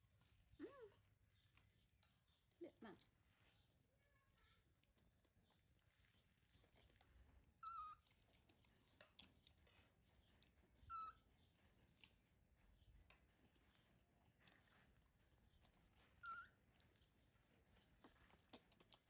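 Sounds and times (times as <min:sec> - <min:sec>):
faint clicks and taps: 0:01.4 - 0:03.6, 0:04.7 - 0:10.6
baby monkey high-pitched calls: 0:07.6 - 0:08.0, 0:10.8 - 0:11.3, 0:16.2 - 0:16.6.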